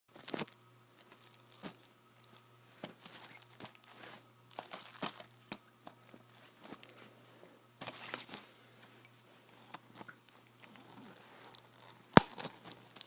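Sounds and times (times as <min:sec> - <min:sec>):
packaging torn and crinkled: 0:00.2 - 0:02.4, 0:03.0 - 0:05.4, 0:10.6 - 0:13.0.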